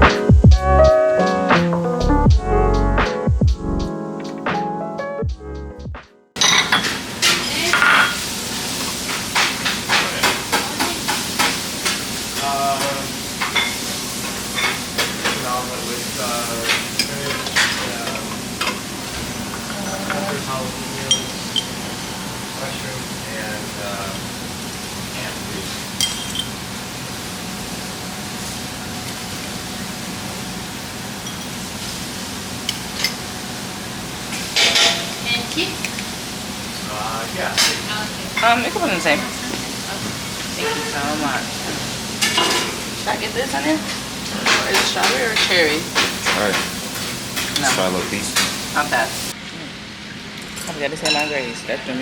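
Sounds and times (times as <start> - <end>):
room hum: 0.0 - 52.0
glass clinking: 6.4 - 6.9, 7.8 - 8.2, 21.1 - 21.8, 26.0 - 26.5
food sizzling on a griddle: 6.4 - 49.4.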